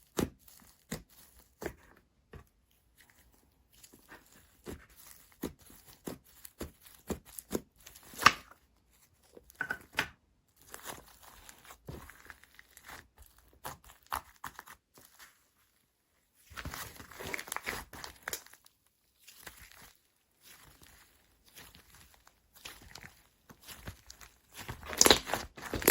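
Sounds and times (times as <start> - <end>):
slime crackling and popping: 16.6 - 25.9.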